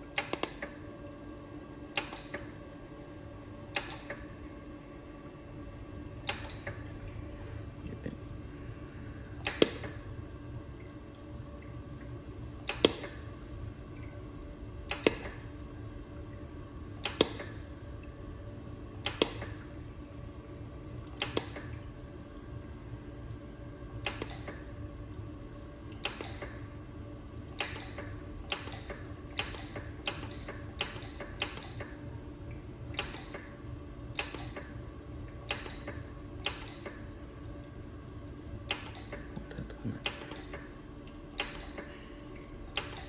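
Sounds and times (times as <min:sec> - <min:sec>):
cooling system humming: 0:00.0 - 0:43.0
laser welder snapping clicks: 0:00.2 - 0:00.7, 0:02.0 - 0:02.5, 0:12.7 - 0:13.2, 0:14.9 - 0:15.4, 0:19.0 - 0:19.5, 0:21.2 - 0:21.7, 0:24.0 - 0:24.6, 0:26.0 - 0:26.6, 0:27.6 - 0:31.9, 0:33.0 - 0:33.5, 0:34.2 - 0:34.7, 0:35.5 - 0:37.0.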